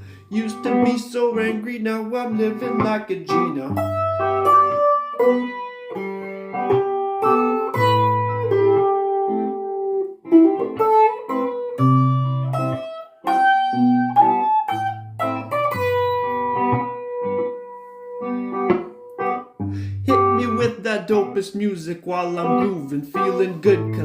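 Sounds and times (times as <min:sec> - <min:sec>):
guitar picking a melody: 0:00.0 - 0:24.0
bass line: 0:19.7 - 0:21.0.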